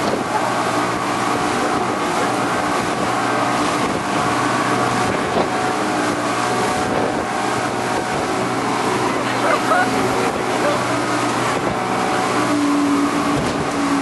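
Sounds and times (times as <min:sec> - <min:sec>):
wind on microphone: 0:00.0 - 0:09.2, 0:09.8 - 0:14.0
motor drone: 0:00.0 - 0:14.0.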